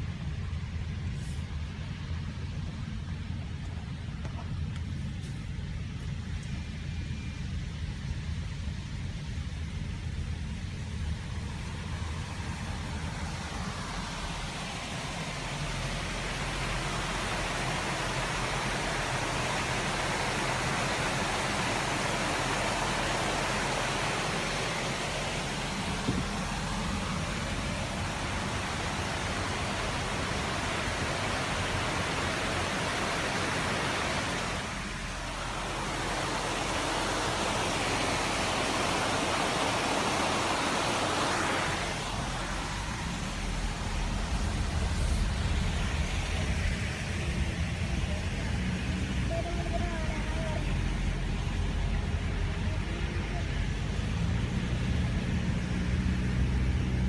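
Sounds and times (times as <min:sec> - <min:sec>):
car road rumble: 0:00.0 - 0:57.0
loud rushing hiss: 0:10.4 - 0:52.7.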